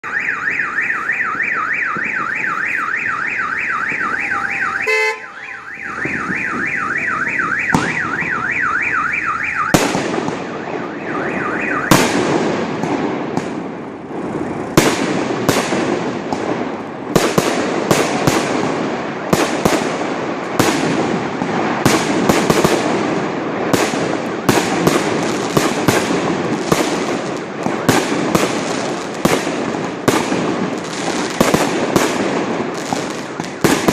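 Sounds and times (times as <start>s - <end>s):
car alarm warbling: 0.0s - 9.8s, 10.4s - 12.1s
firecrackers banging: 0.0s - 33.9s
continuous crackling: 11.8s - 33.9s.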